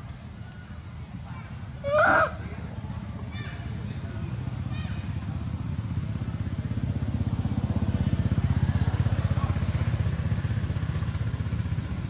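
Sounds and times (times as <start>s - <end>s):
motorcycle engine passing by: 2.9s - 12.0s.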